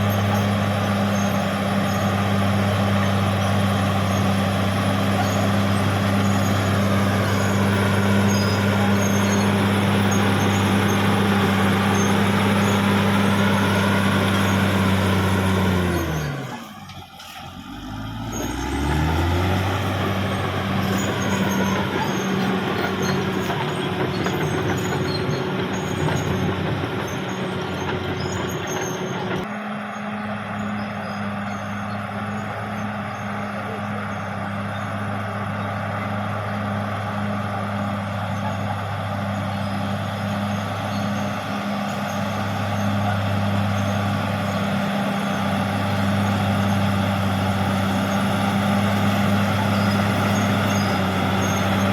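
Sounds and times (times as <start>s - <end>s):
bulldozer diesel engine running: 0.0s - 51.9s
wavering high squeal: 4.0s - 35.7s.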